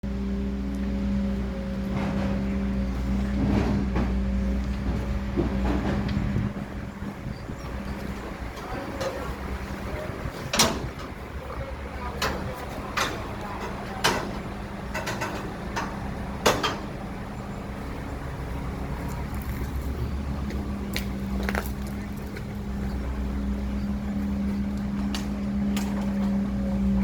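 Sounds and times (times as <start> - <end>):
engine humming: 0.0 - 27.0
sharp knocks and clanks: 10.4 - 11.2, 12.2 - 17.0.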